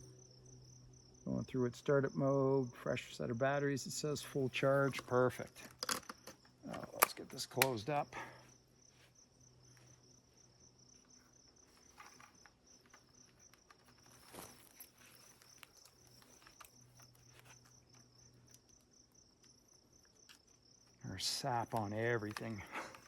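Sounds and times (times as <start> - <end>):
crickets trilling: 0.0 - 23.0
soft clicks and rustles: 11.0 - 21.0.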